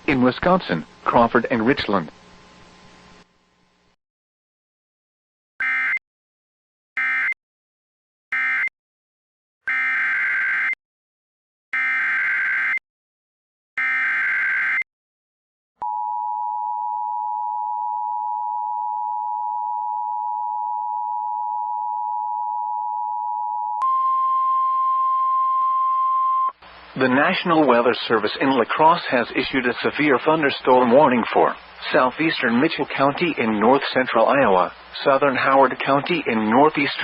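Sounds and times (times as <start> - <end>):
two-tone attention signal: 23.8 - 26.6.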